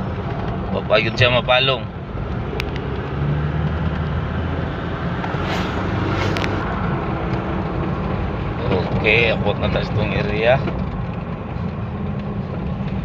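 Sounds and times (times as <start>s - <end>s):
car engine hum: 0.0s - 13.0s
road noise: 0.0s - 13.0s.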